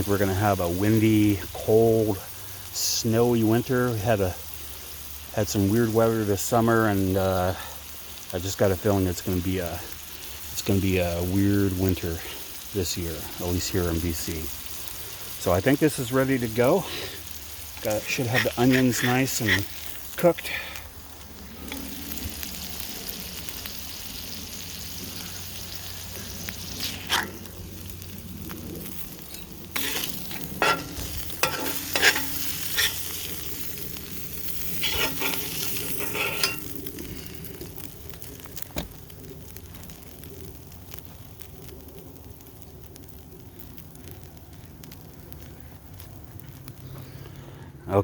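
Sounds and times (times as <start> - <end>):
burgers sizzling on a griddle: 0.0 - 47.8
metal spatula clanking and scraping: 29.3 - 33.3, 34.8 - 36.8.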